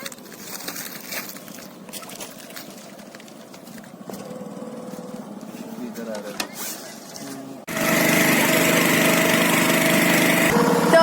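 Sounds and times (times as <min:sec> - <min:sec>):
small boat motor running: 0:04.1 - 0:05.5, 0:07.7 - 0:11.0.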